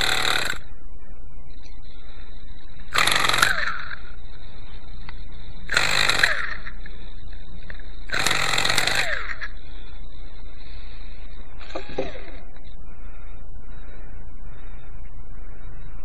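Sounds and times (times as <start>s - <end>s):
model engine sputtering: 0.0s - 0.7s, 2.8s - 10.3s
high thin whine: 0.0s - 16.0s.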